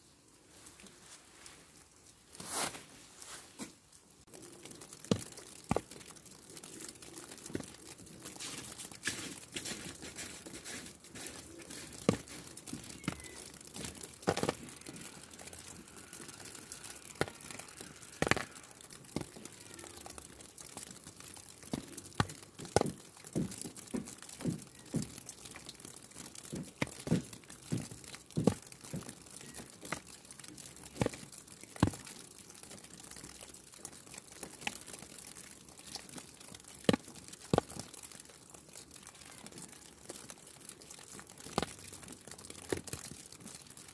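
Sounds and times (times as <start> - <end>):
snow falling hiss: 0.0 - 22.9
snow ticks and crackles: 0.0 - 43.9.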